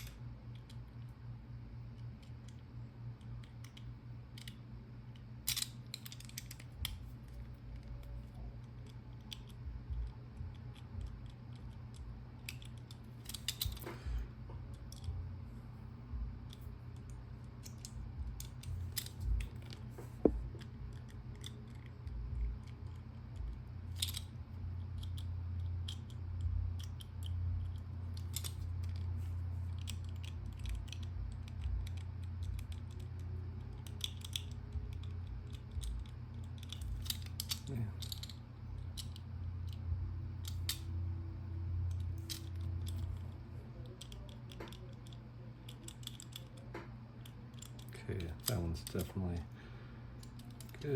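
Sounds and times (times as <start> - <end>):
low hum: 0.0 - 50.9
padlock dials clicking: 5.4 - 13.8, 23.9 - 29.1, 29.7 - 41.0, 41.8 - 46.6, 47.2 - 49.4.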